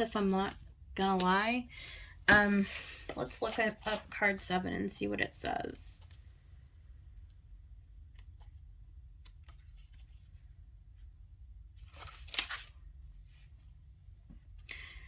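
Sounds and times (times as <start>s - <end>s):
paper page turning: 11.8s - 12.8s.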